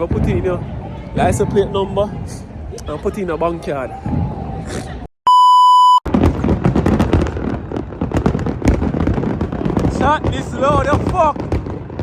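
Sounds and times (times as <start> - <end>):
electronic censor bleep: 5.3 - 6.1
fireworks crackling and popping: 6.1 - 12.0.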